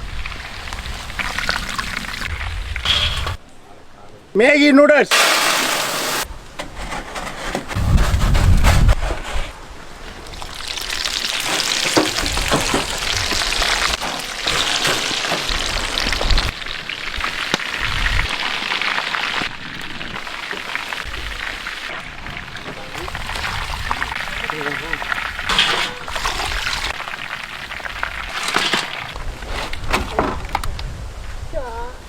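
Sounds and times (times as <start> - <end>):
oil sizzling while frying: 5.1 - 6.3, 10.2 - 29.2.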